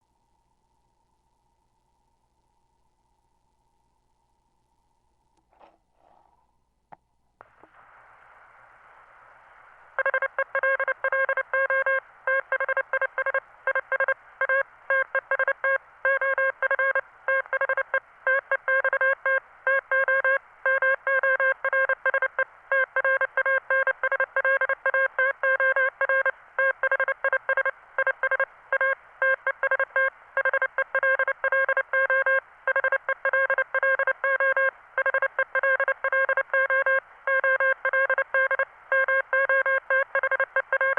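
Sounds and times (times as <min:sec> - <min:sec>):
faint hiss: 0:07.4 - 0:12.3
morse code beeps: 0:10.0 - 0:40.9.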